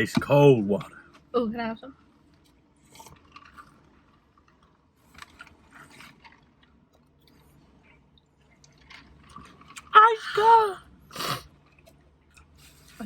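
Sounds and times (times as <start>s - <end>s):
chewing and crunching food: 1.9s - 10.0s, 10.8s - 13.0s.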